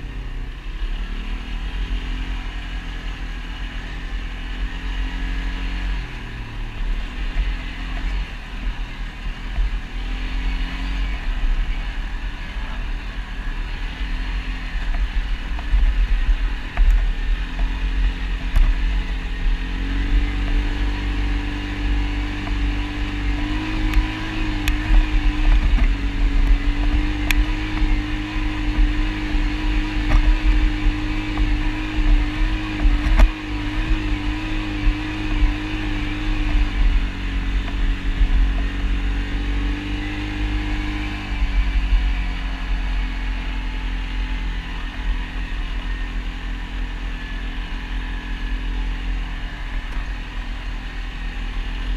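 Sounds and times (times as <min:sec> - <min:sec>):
atv engine running: 0:00.0 - 0:51.9
heavy low rumble: 0:00.0 - 0:51.9.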